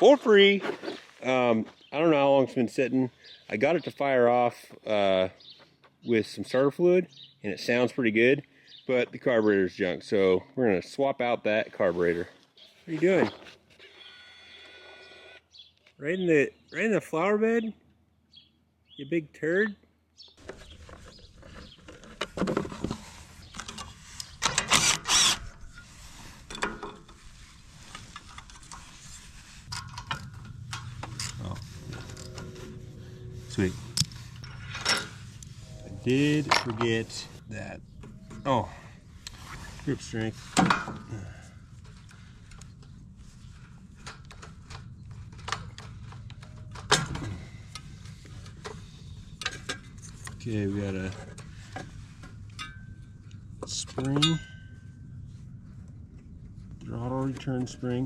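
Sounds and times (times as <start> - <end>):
hand tools clicking and rattling: 29.7 - 32.5
metal clank: 29.7 - 37.2.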